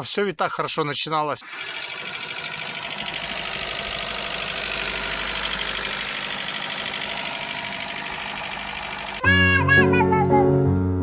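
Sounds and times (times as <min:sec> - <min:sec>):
car engine idling with knocking: 0:01.6 - 0:09.2.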